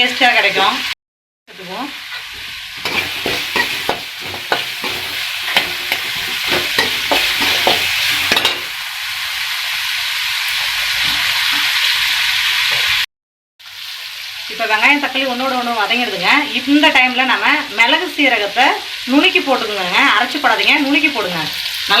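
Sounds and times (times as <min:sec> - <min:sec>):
vegetables sizzling in oil: 0:00.0 - 0:13.0, 0:13.6 - 0:22.0
spoon scraping a pan: 0:02.1 - 0:08.8.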